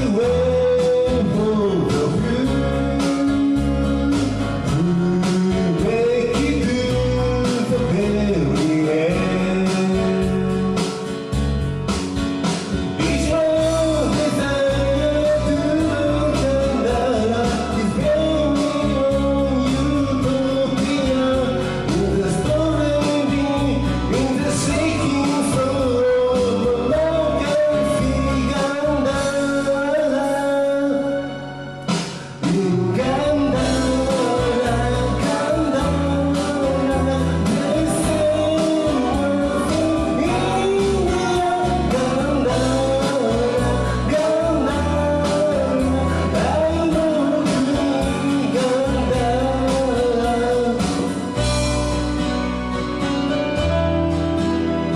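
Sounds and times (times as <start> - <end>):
pop-rock song with singing: 0.0 - 54.9.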